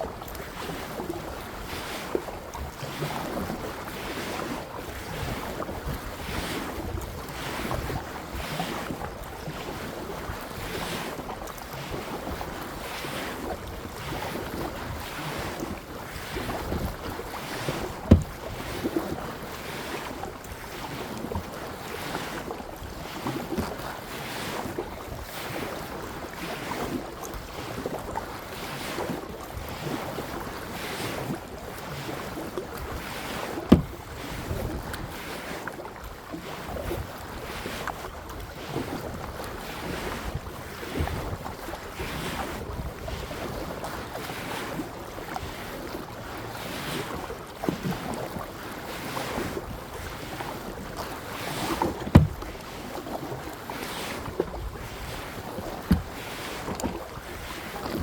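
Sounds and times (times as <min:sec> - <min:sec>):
paddle strokes splashing water: 0:00.0 - 0:58.0
sharp knocks: 0:18.1 - 0:18.4, 0:33.7 - 0:33.9, 0:52.1 - 0:52.4.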